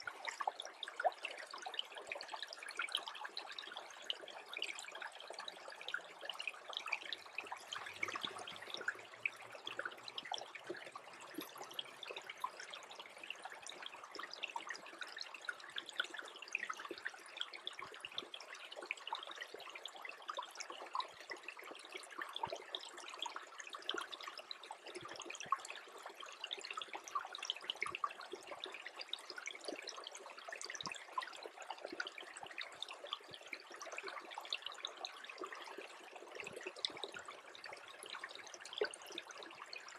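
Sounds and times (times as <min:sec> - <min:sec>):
stream trickling: 0:00.0 - 0:39.9
tiny drips and ticks: 0:00.0 - 0:39.9.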